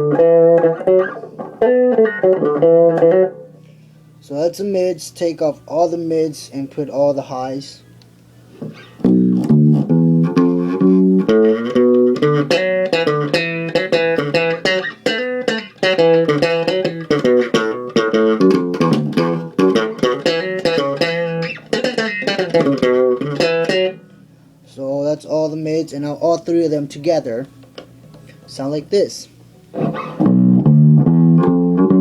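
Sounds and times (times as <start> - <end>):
electric bass plucked notes: 0.0 - 3.6, 8.7 - 24.2, 29.7 - 32.0.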